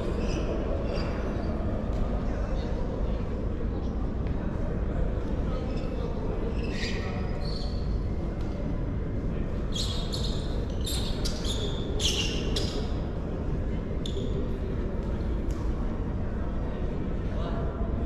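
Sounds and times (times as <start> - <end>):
shoe squeaks: 6.5 - 7.9, 9.7 - 12.9.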